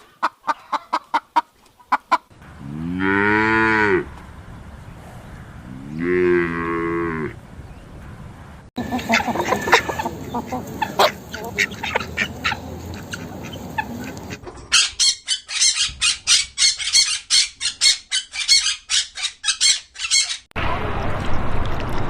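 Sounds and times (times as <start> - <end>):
birds squawking: 8.8 - 20.5.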